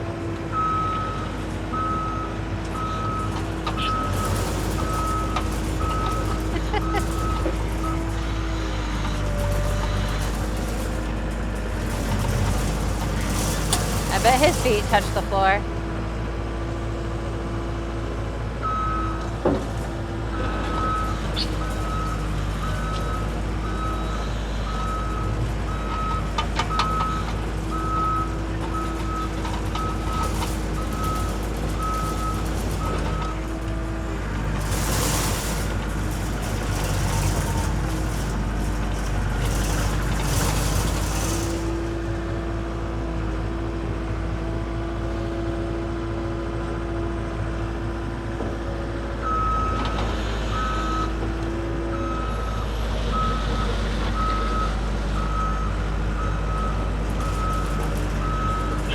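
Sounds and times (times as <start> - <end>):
track loader running: 0.0 - 58.9
backup alarm beeping: 11.8 - 15.6.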